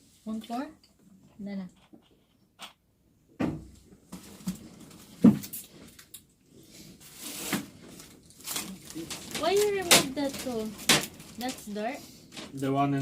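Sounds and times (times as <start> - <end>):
knocks of objects being handled: 9.2 - 11.7.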